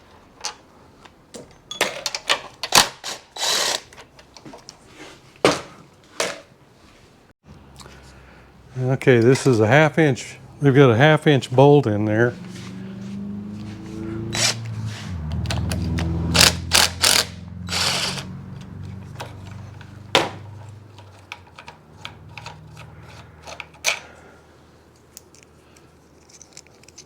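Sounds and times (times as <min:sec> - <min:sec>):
metal parts clinking and knocking: 0:01.3 - 0:04.4, 0:17.9 - 0:24.2, 0:24.9 - 0:27.0
sharp tool clicks: 0:14.3 - 0:14.7, 0:15.4 - 0:18.3.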